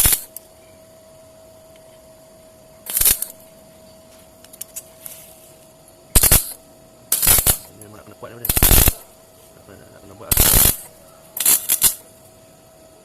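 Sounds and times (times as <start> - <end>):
arc welding crackling burst: 0.0 - 0.3, 2.9 - 3.4, 6.1 - 9.2, 10.2 - 12.0
steady hum: 0.0 - 13.0.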